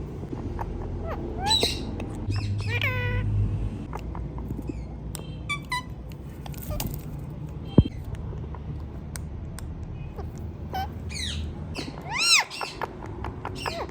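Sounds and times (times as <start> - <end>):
parakeet chirps and squeaks: 0.3 - 3.4, 4.6 - 6.0, 10.0 - 13.9.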